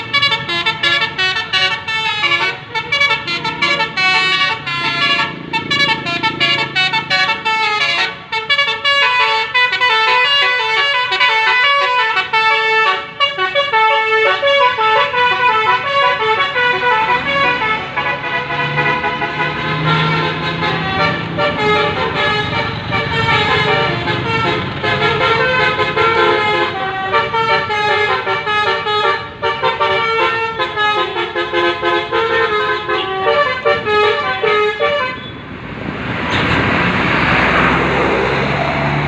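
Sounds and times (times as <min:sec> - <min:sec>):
bus air horn melody: 0:00.0 - 0:35.4
loud rushing noise: 0:35.5 - 0:39.0.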